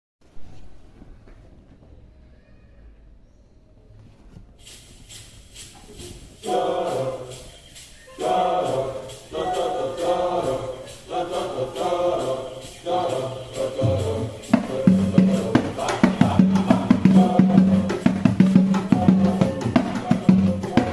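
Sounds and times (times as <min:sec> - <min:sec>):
percussion beat: 0:04.6 - 0:20.9
group of voices singing: 0:06.1 - 0:20.9.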